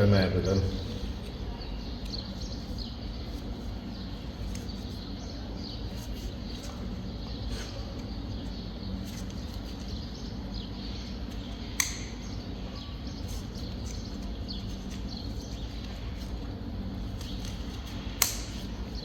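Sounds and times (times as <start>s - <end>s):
steady low hum: 0.0s - 19.0s
faint bird chirps: 0.8s - 16.3s
sharp click: 11.8s - 12.2s.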